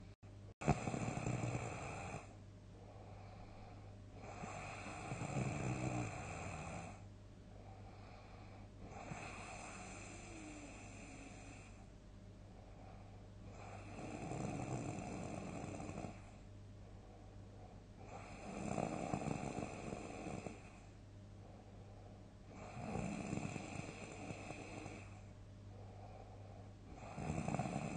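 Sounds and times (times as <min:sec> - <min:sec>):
person snoring: 0:00.6 - 0:02.3, 0:04.2 - 0:07.0, 0:08.8 - 0:11.8, 0:13.5 - 0:16.3, 0:18.0 - 0:20.8, 0:22.5 - 0:25.2, 0:26.9 - 0:27.9
soft breath: 0:01.6 - 0:05.4, 0:06.1 - 0:27.2.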